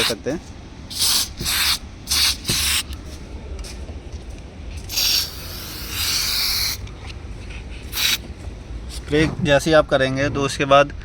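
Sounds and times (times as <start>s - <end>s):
aerosol spray hissing: 0.0s - 0.2s, 0.9s - 3.0s, 4.9s - 6.9s, 7.9s - 8.3s.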